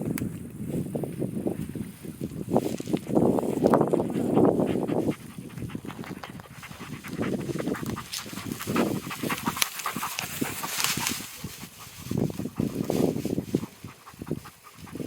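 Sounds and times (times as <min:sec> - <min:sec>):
dog panting hard: 0:03.8 - 0:15.0.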